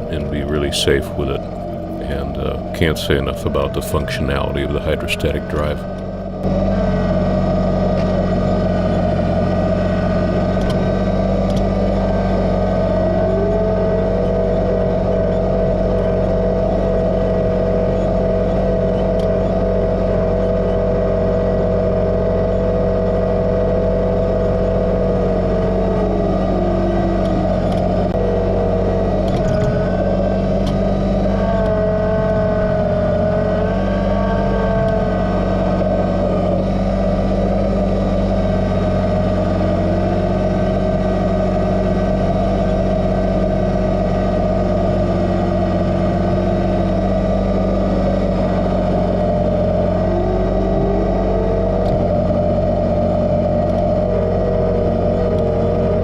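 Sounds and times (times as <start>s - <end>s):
engine whine: 0.0s - 56.0s
tractor diesel engine running: 0.0s - 56.0s.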